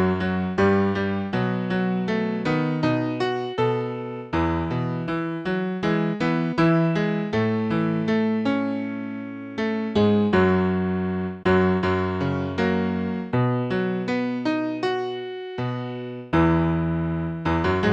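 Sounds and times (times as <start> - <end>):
keyboard piano chords: 0.0 - 17.9.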